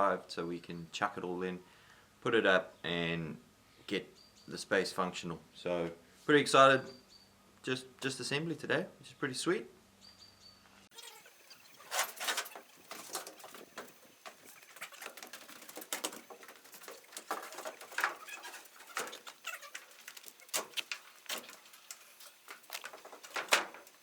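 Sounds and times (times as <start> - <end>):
parts and boxes knocking and clattering: 11.8 - 24.0.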